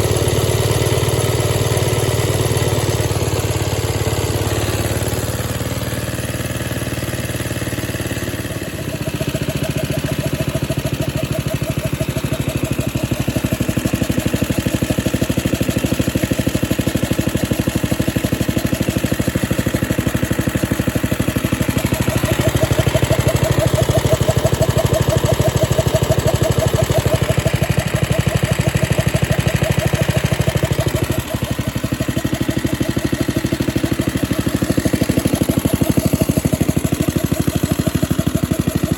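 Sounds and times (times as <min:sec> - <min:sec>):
small engine running: 0:00.0 - 0:38.9
air compressor pump: 0:07.8 - 0:38.9.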